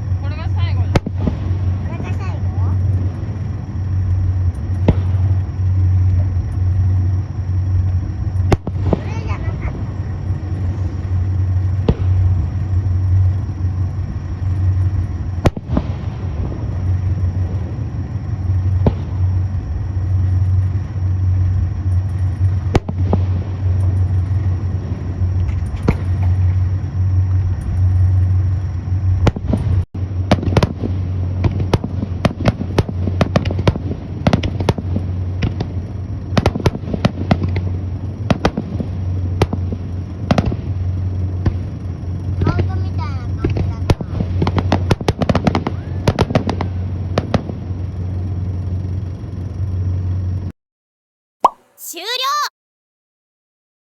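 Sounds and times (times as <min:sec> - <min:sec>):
steady low hum: 0:00.0 - 0:50.5
fireworks bursting: 0:00.4 - 0:12.5.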